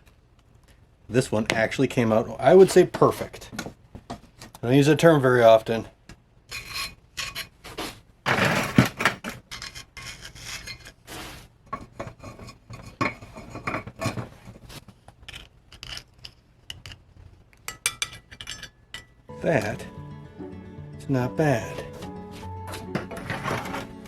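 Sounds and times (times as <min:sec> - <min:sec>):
scraping and rubbing metal pieces: 0:06.5 - 0:17.4, 0:22.0 - 0:24.0.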